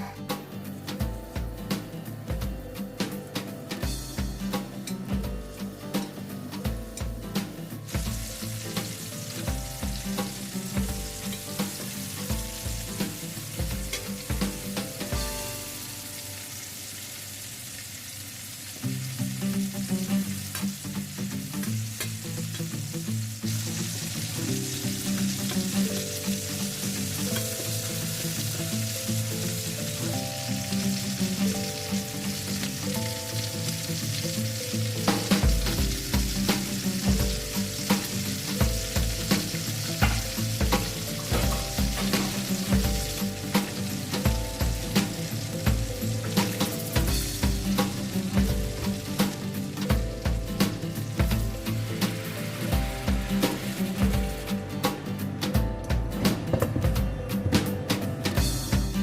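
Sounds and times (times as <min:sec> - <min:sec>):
background music: 0:00.0 - 0:17.8, 0:18.8 - 0:59.0
food sizzling in a frying pan: 0:00.0 - 0:55.4
utensil knocking against pan: 0:40.0 - 0:43.1.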